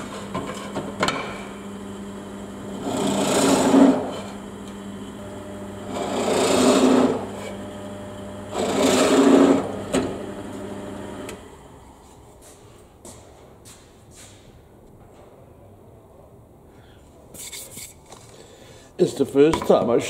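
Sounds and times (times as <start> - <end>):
power tool motor running: 0.0 - 11.6.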